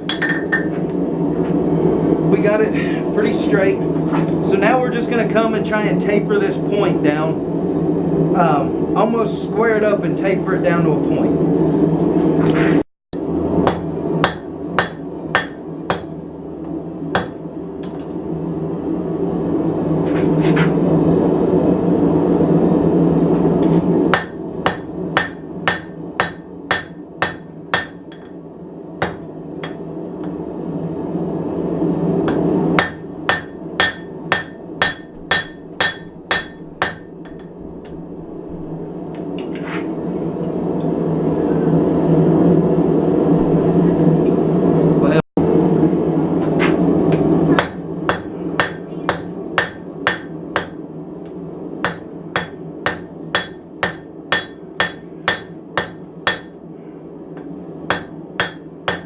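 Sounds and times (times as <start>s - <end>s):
hammer striking steel on anvil: 0.0s - 1.0s, 13.2s - 16.5s, 17.2s - 18.2s, 24.1s - 30.4s, 32.3s - 38.1s, 47.5s - 51.1s, 51.8s - 56.8s, 57.4s - 59.0s
loud steady roar: 0.0s - 59.0s.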